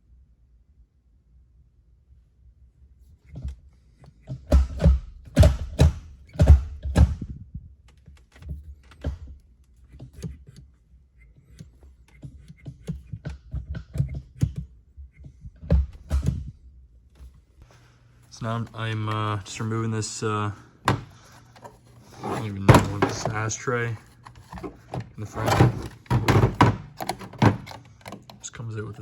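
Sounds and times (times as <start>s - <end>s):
plastic parts knocking: 20.8s - 28.4s.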